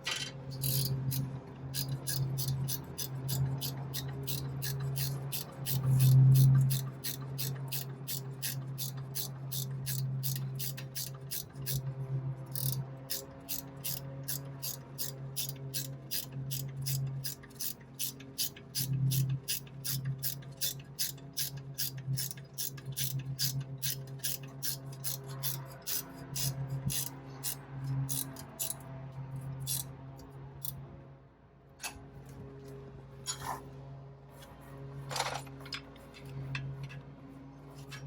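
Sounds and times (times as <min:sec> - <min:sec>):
ratchet wrench clicking: 0:00.0 - 0:11.8, 0:12.5 - 0:28.9, 0:29.6 - 0:30.8.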